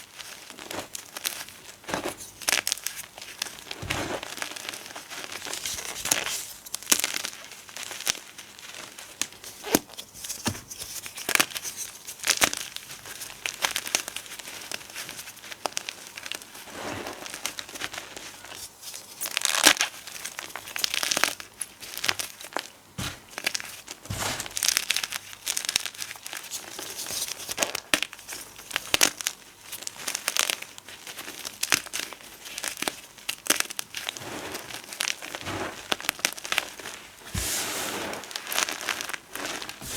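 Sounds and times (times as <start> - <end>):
powder crunching and crumbling: 0.0 - 39.9.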